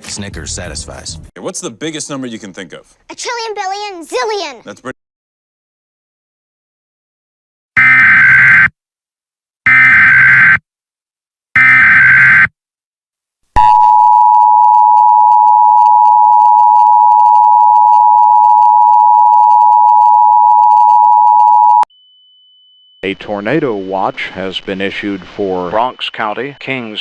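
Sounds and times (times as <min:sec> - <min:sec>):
screechy warbling data bursts: 0:09.7 - 0:10.6, 0:11.6 - 0:12.5.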